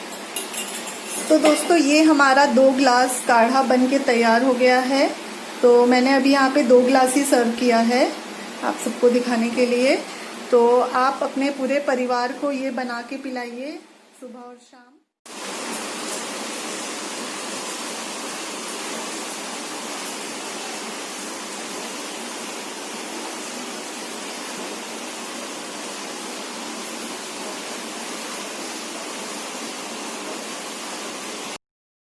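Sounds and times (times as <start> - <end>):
steady rushing hiss: 15.3 - 31.6.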